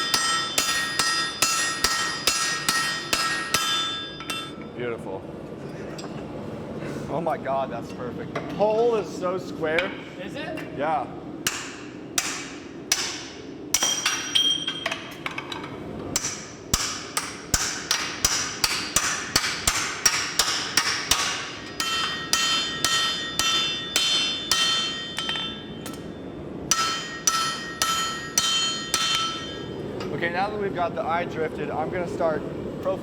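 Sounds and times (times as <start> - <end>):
metallic ringing of anvil: 0.0 - 4.8, 11.5 - 15.1, 16.2 - 30.2.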